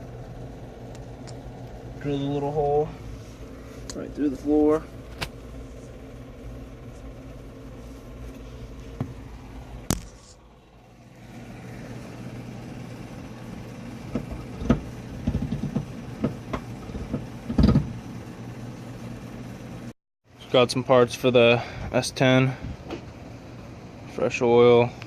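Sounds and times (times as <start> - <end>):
knocks and clicks: 14.1 - 18.0.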